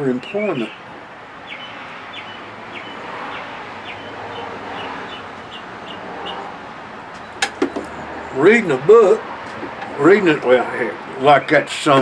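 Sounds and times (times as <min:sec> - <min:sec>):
steady background noise: 0:00.0 - 0:12.0
small bird chirping: 0:01.4 - 0:06.4.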